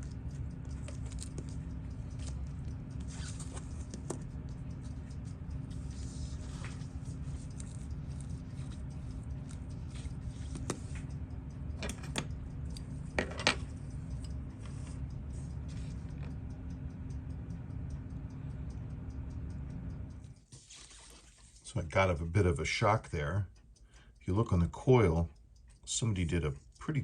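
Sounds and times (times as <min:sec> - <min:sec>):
watch tools clicking: 0:00.0 - 0:17.7
steady low hum: 0:00.0 - 0:27.0.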